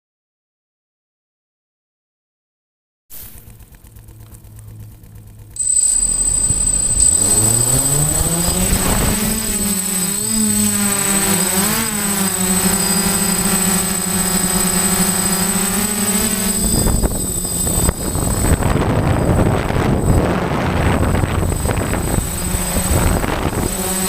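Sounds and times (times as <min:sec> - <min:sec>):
drone motors humming: 0:03.3 - 0:24.0
faint high whine: 0:05.5 - 0:24.0
wind noise on microphone: 0:06.0 - 0:24.0.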